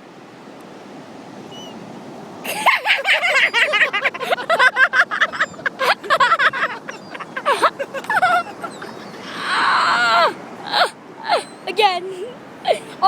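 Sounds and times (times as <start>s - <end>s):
seagulls squawking: 1.5s - 1.8s, 2.5s - 11.8s.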